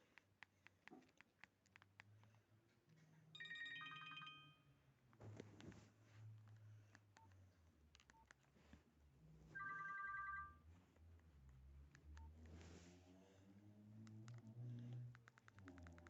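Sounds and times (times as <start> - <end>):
phone ringtone: 3.4 - 4.8, 9.6 - 10.6.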